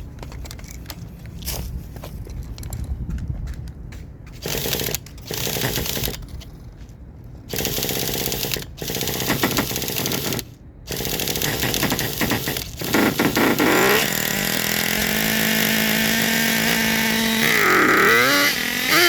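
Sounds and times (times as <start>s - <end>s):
model engine starter rattling: 4.4s - 6.2s, 7.5s - 19.0s.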